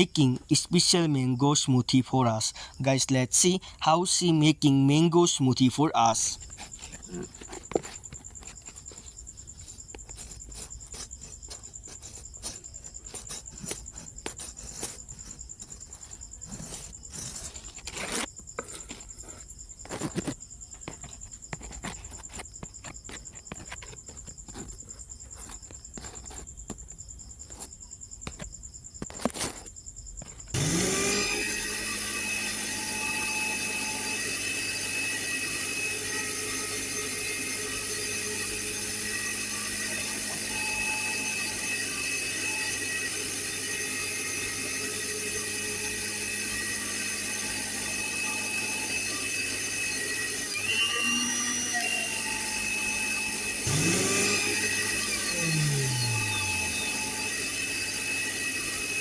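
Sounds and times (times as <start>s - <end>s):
electric blender running: 30.6s - 59.0s.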